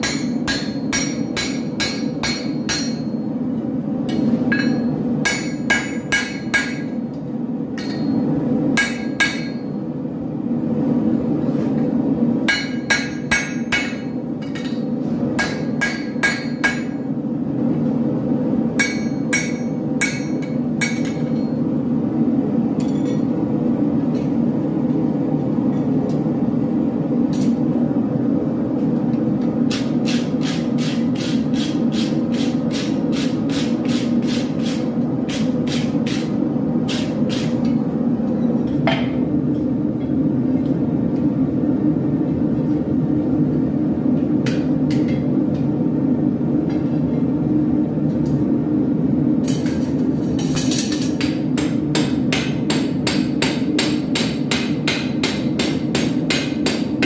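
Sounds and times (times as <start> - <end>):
hammer striking steel on anvil: 0.0 - 3.3, 4.1 - 7.0, 7.8 - 9.8, 12.4 - 17.1, 18.8 - 21.6, 50.6 - 57.0.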